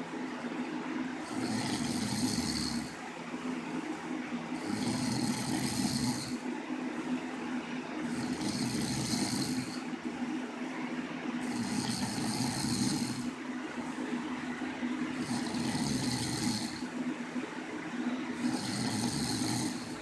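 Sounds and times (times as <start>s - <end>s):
cat snoring: 1.2s - 3.0s, 4.6s - 6.4s, 8.1s - 9.9s, 11.4s - 13.4s, 15.2s - 17.0s, 18.4s - 20.0s.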